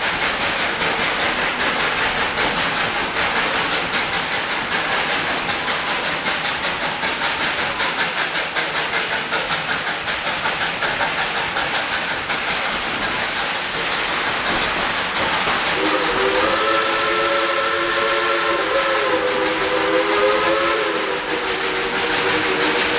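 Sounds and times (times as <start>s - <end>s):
steady steam hiss: 0.0s - 22.9s
steam locomotive exhaust chuffs: 0.0s - 22.9s
steam whistle chord: 15.8s - 22.9s.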